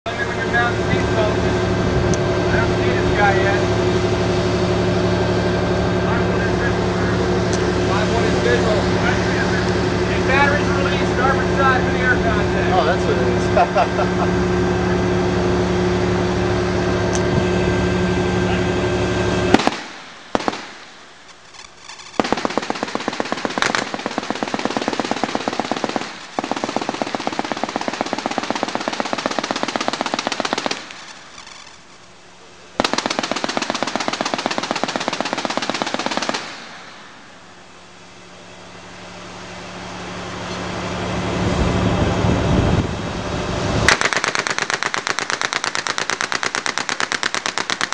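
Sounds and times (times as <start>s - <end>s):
steady drone hum: 0.1s - 47.9s
machine gun automatic bursts: 19.5s - 32.1s, 32.8s - 37.2s, 43.9s - 47.9s.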